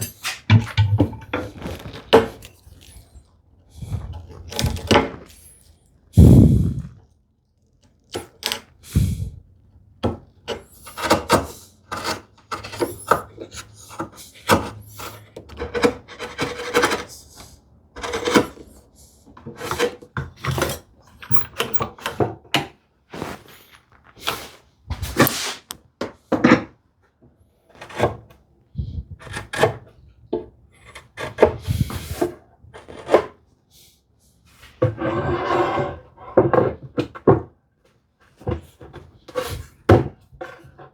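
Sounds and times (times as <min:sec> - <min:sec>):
hand tools scraping wood: 0:00.0 - 0:07.0, 0:10.0 - 0:22.4, 0:23.1 - 0:25.8, 0:27.7 - 0:33.4, 0:34.6 - 0:37.2.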